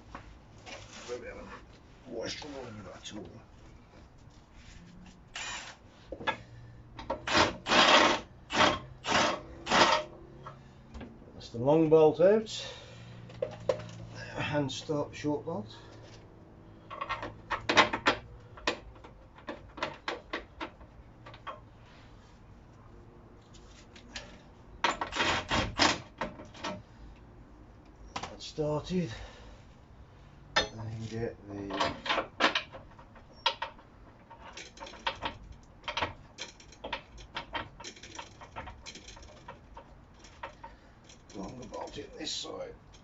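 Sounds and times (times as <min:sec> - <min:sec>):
metallic clicks of tools and bolts: 0:16.8 - 0:21.7, 0:30.5 - 0:31.0, 0:31.7 - 0:42.2.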